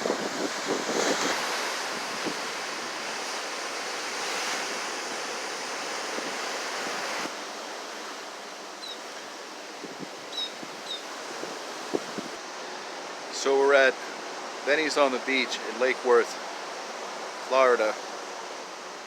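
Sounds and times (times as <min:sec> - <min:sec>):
wind on microphone: 0:00.0 - 0:07.3, 0:09.7 - 0:12.4
ocean surf on beach: 0:00.0 - 0:19.0.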